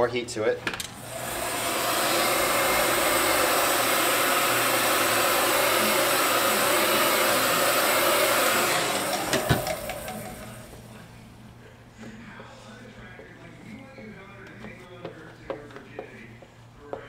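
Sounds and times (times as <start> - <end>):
heat gun blowing: 1.0 - 10.9.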